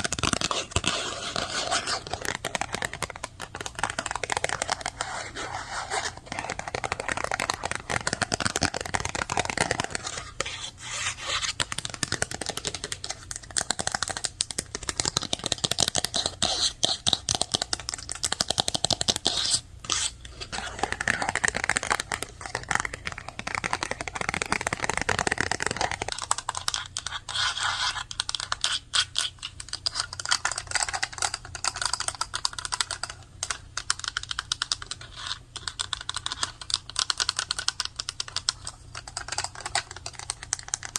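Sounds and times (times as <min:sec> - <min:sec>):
fast typing on keyboard: 0:20.9 - 0:26.8.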